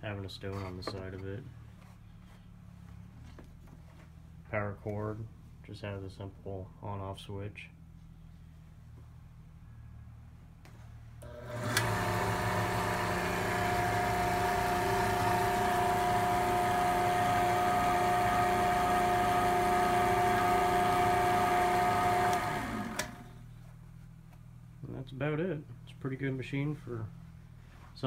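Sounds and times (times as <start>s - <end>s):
saw motor whining: 11.2s - 23.3s.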